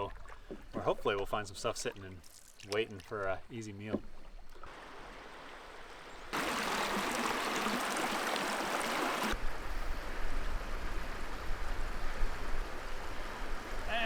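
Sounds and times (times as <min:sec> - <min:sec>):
water with low rumble: 0:00.0 - 0:14.0.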